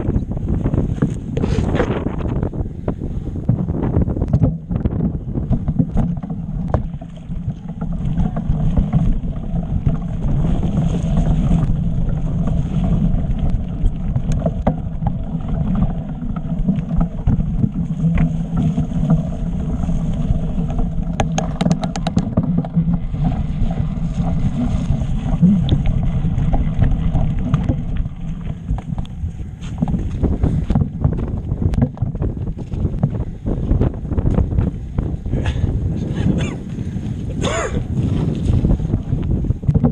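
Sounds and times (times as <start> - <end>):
tyres rumbling on rocky trail: 0.0 - 39.9
wind buffeting microphone: 0.0 - 39.9
bike clicks and rattles: 20.7 - 22.8.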